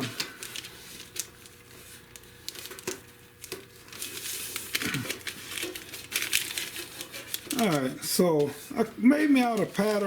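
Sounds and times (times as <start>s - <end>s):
paper crinkling and rustling: 0.0s - 10.0s.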